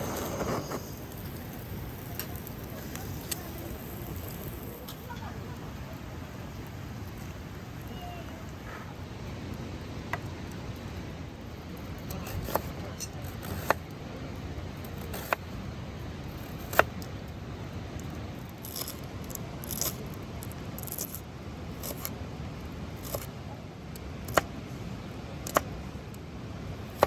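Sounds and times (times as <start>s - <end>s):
rustles: 0.0s - 9.6s.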